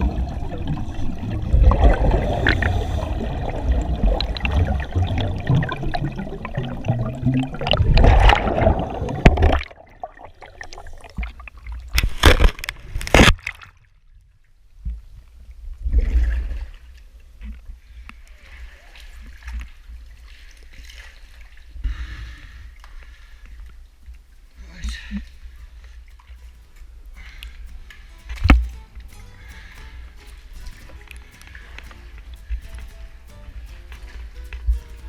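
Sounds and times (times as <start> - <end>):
water gurgling and splashing: 0.0 - 13.8.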